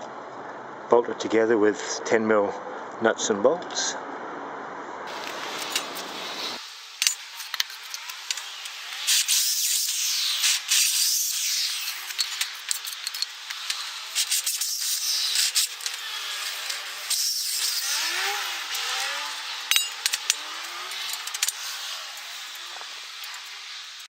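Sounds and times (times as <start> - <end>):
tools and steel parts clinking: 5.1 - 6.1, 7.0 - 9.1, 10.2 - 23.7
steady hiss: 5.1 - 24.0.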